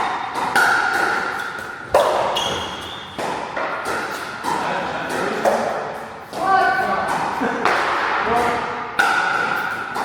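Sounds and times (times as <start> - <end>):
paddles hitting plastic ball: 0.0 - 2.4.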